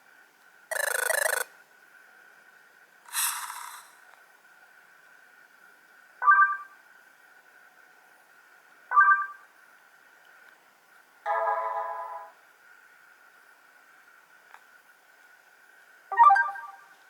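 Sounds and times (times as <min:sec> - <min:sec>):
smartphone electronic tones: 0:06.2 - 0:06.7, 0:08.9 - 0:09.4, 0:16.1 - 0:16.9
faint high whine: 0:16.1 - 0:17.0.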